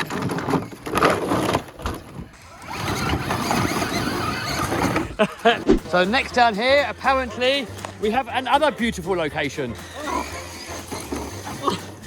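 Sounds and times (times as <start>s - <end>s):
motor and gears whirring: 0.0s - 5.8s
tyres scraping on rock: 0.0s - 6.0s.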